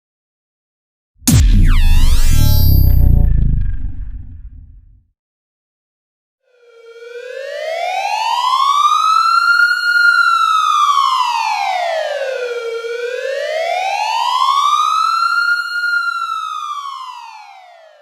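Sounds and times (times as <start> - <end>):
siren wailing in slow sweeps: 1.3 - 4.8.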